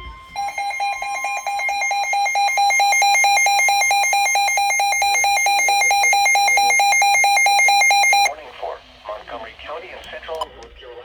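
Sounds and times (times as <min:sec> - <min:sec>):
rapidly pulsing alarm beep: 0:00.0 - 0:08.4.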